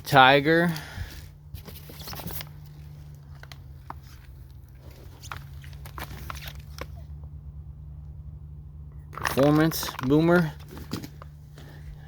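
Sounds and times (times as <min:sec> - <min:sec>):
steady low hum: 0:00.0 - 0:12.0
cardboard boxes being handled: 0:01.1 - 0:07.0, 0:09.3 - 0:12.0.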